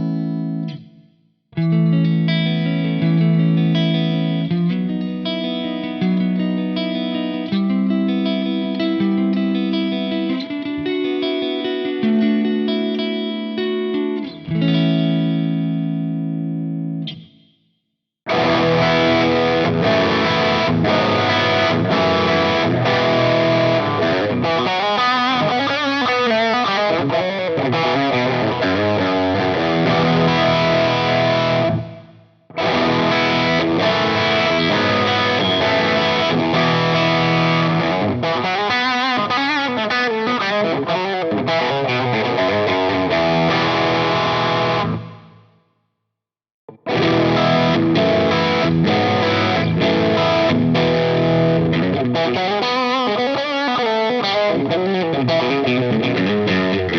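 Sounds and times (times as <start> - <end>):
distorted guitar riffing: 1.6 - 17.4, 18.3 - 45.6, 46.7 - 56.9
distorted electric guitar chord: 18.3 - 45.5, 46.7 - 56.9.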